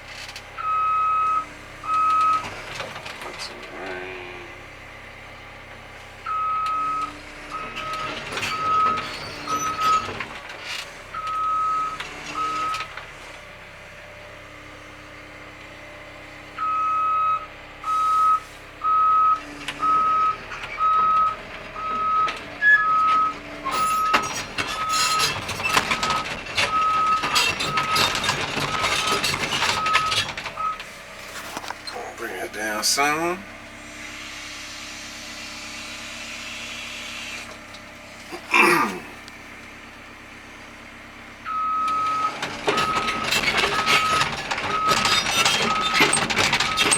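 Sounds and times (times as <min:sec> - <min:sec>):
excavator travel alarm beeping: 0:00.5 - 0:02.8, 0:06.2 - 0:10.4, 0:11.1 - 0:13.0, 0:16.5 - 0:30.9, 0:41.4 - 0:46.9
metal clanks and rattles: 0:20.4 - 0:31.9, 0:42.4 - 0:46.9.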